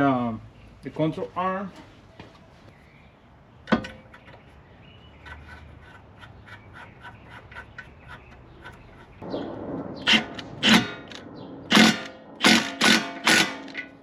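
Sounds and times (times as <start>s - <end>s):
metal clank: 10.1s - 14.0s.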